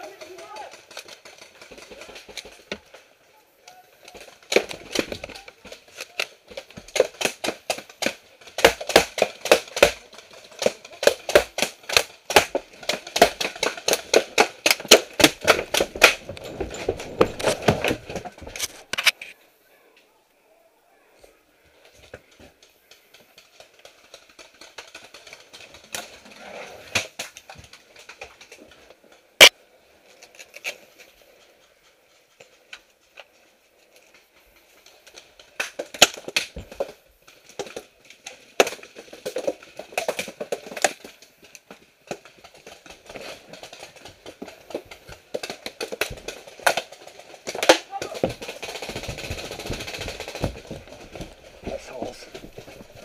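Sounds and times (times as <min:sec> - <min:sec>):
rustling movement: 0:10.0 - 0:19.4, 0:21.6 - 0:53.0
indistinct voices: 0:51.6 - 0:53.0.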